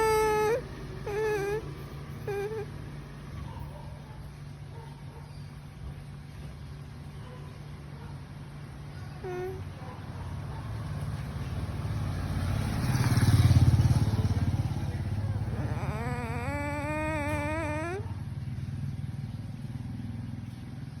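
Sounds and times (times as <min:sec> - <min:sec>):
vehicle engine rumbling: 0:00.0 - 0:03.8, 0:08.7 - 0:21.0.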